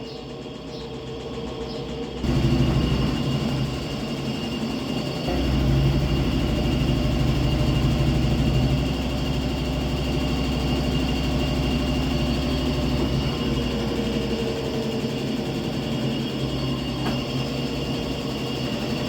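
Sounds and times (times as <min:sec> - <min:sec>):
washing machine spinning: 0:00.0 - 0:19.0.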